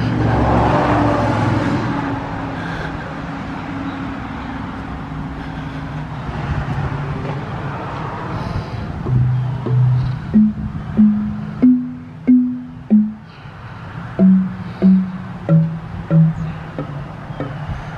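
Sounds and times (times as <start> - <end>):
vehicle engine passing: 0.0 - 5.4, 6.0 - 17.7
steady road noise: 0.0 - 17.9
low musical note: 9.1 - 13.3, 14.2 - 17.0.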